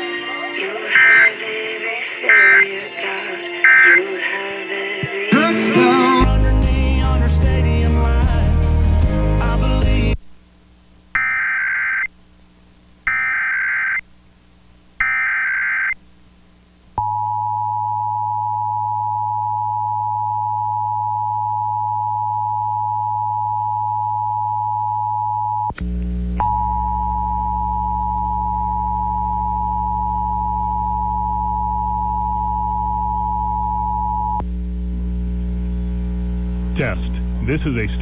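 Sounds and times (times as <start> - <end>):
data screech bursts: 0.8 - 1.4, 3.4 - 4.2, 11.2 - 12.1, 13.1 - 14.0, 15.0 - 16.0
steady dual-tone attention signal: 13.1 - 14.0, 17.0 - 25.7, 26.4 - 34.4
low hum: 16.0 - 38.0.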